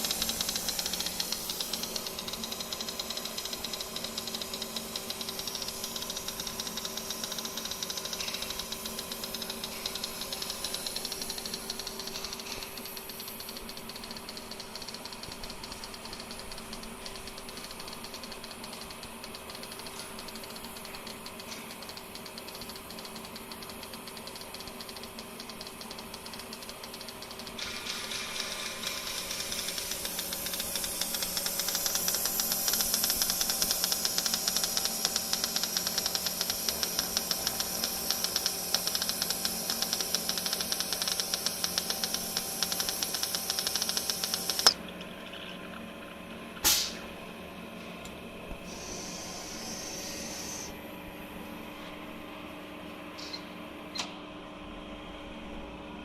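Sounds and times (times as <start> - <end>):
machine hum: 0.0 - 22.9, 27.5 - 56.0
plasma welding arc crackling: 28.7 - 44.7.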